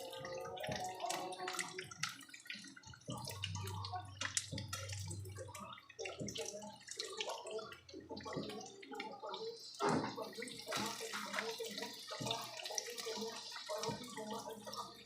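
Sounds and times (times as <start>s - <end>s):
batter frying in oil: 0.0s - 15.0s.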